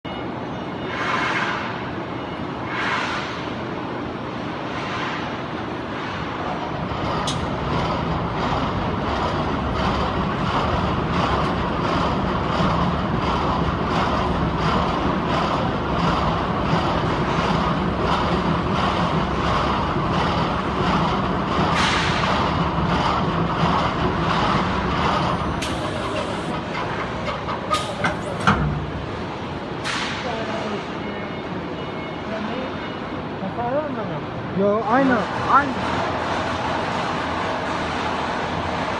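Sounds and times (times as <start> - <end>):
packing machine running: 7.2 - 29.1.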